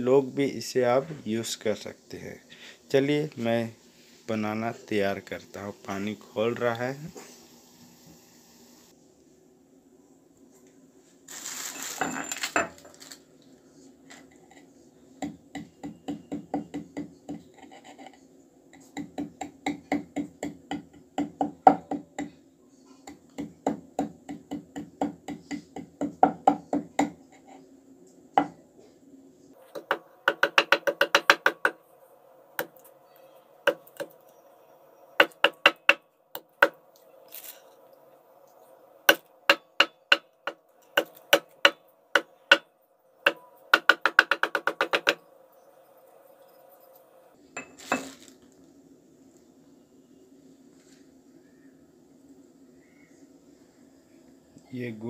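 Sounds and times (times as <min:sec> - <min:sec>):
rustling scrape: 0:10.5 - 0:13.2.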